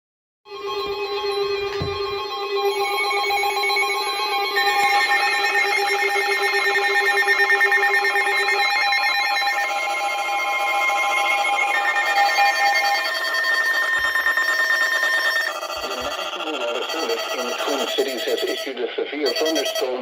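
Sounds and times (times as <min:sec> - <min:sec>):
electronic alert tone: 0:00.6 - 0:20.0.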